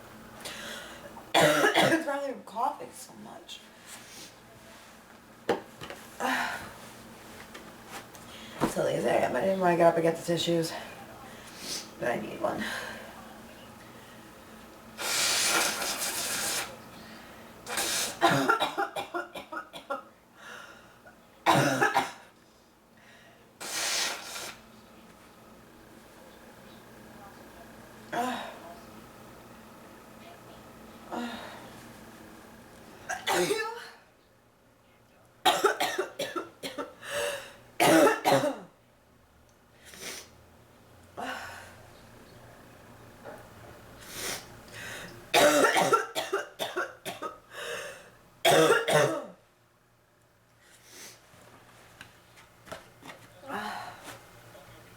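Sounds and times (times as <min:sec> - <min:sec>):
woman breathing: 0:00.4 - 0:01.1, 0:20.4 - 0:21.1, 0:44.0 - 0:45.2, 0:47.5 - 0:48.1, 0:53.5 - 0:54.2
woman coughing: 0:01.4 - 0:02.1, 0:18.2 - 0:20.0, 0:21.5 - 0:22.3, 0:33.1 - 0:34.0, 0:35.5 - 0:37.0, 0:37.8 - 0:38.7, 0:45.3 - 0:49.4.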